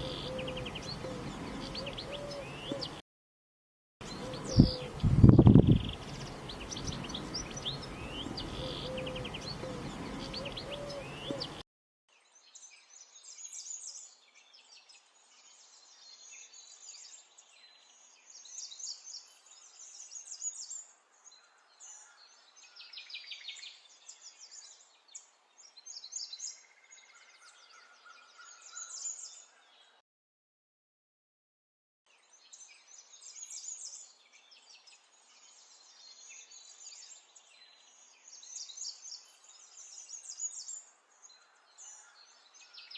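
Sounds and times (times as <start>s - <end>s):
small birds chirping: 0.0s - 3.0s, 4.0s - 11.6s.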